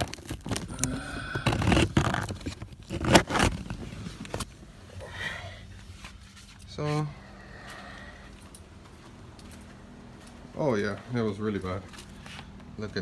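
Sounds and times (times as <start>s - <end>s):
air filter scraping and rustling: 0.0s - 7.3s.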